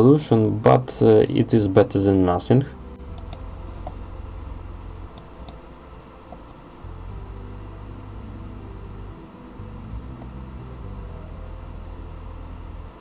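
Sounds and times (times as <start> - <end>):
low hum with faint hiss: 0.0 - 13.0
faint clicks: 3.1 - 4.1.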